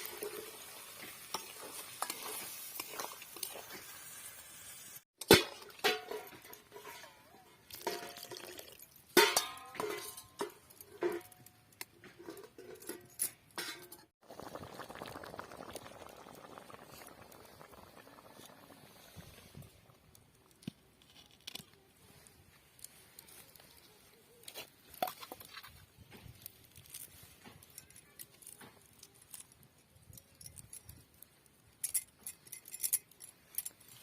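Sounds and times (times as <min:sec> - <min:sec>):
cooking utensils clinking: 0:05.3 - 0:14.1
soft steady rushing liquid: 0:14.2 - 0:20.2.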